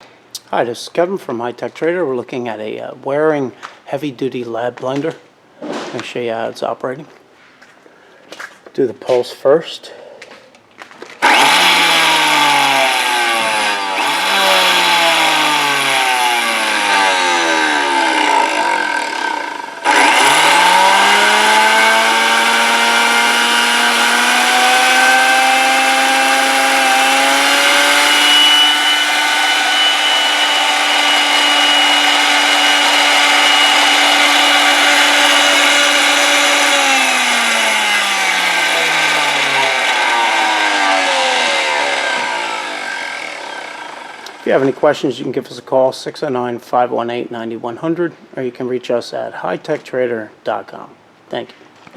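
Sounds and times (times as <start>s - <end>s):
blender motor whining: 11.2s - 44.8s.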